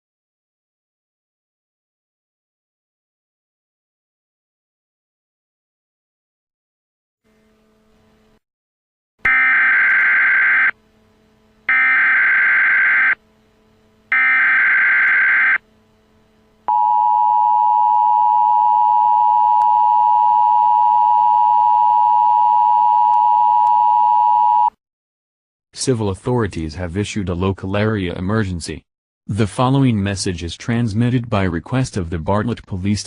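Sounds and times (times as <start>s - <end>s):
buzzy digital data bursts: 11.7s - 13.2s, 14.1s - 15.6s.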